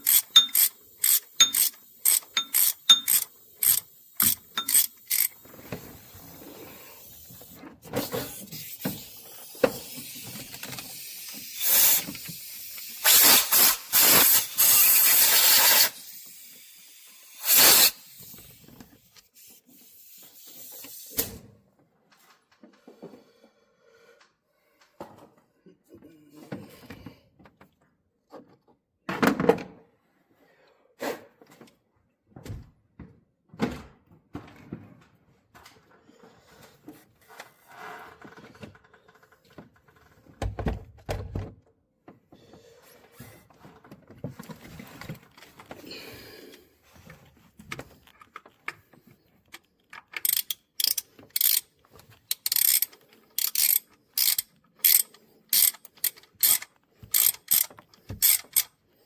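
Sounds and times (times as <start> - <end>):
ratchet wrench clicking: 0.0 - 5.4, 10.9 - 18.3, 50.0 - 58.7.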